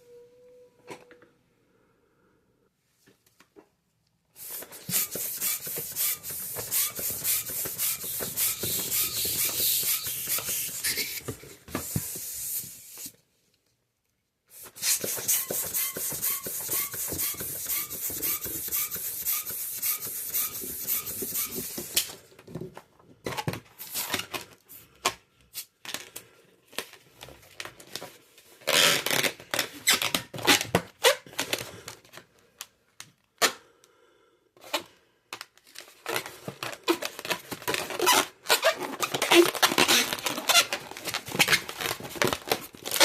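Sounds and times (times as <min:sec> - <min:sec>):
balloons rubbing and squeaking: 0:04.4 - 0:13.1, 0:14.5 - 0:22.0, 0:28.6 - 0:31.3, 0:36.9 - 0:43.0.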